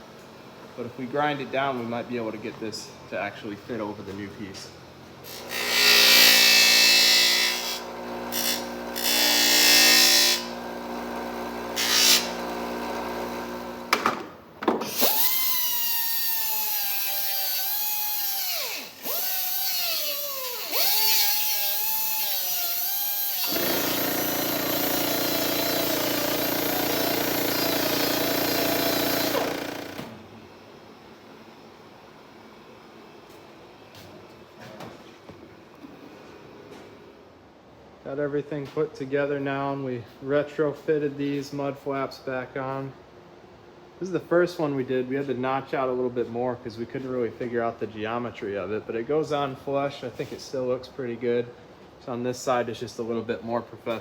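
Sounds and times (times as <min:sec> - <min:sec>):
power tool grinding: 0:05.3 - 0:14.0, 0:14.8 - 0:30.1.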